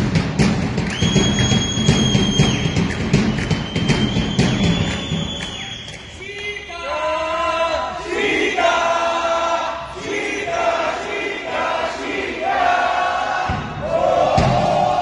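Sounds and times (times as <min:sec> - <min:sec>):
crowd chanting in unison: 0:07.0 - 0:15.0.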